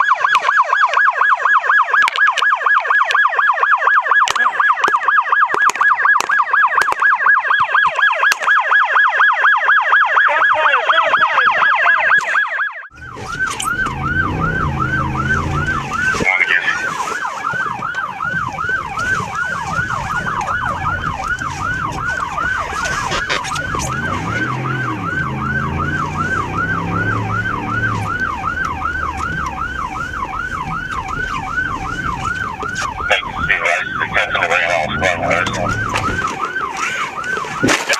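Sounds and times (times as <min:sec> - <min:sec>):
police siren sweeping: 0:00.0 - 0:37.9.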